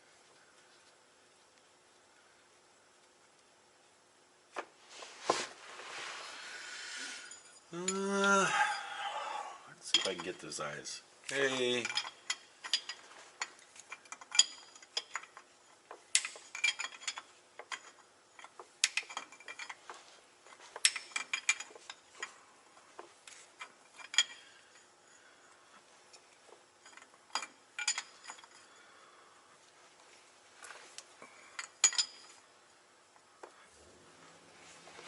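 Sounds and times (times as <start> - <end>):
metallic clicks and clinks: 9.9 - 10.5, 11.3 - 19.9, 23.6 - 24.9, 26.8 - 28.8, 31.0 - 32.5.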